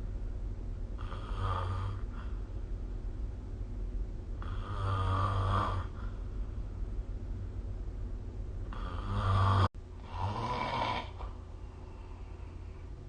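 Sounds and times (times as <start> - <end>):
steady low hum: 0.0 - 13.0
person snoring: 1.0 - 2.3, 4.4 - 6.1, 8.7 - 11.4.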